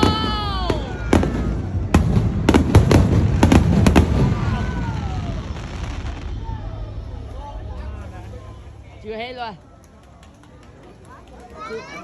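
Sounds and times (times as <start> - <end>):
sharp firework bangs: 0.0 - 6.7.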